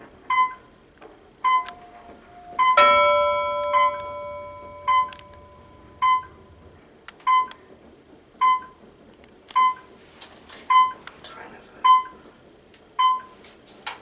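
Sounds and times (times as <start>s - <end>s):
elevator floor-passing beep: 0.3s - 0.7s, 1.4s - 7.6s, 8.4s - 8.8s, 9.6s - 9.9s, 10.7s - 11.0s, 11.9s - 12.2s, 13.0s - 13.3s
multi-tone chime ringing: 2.6s - 6.7s.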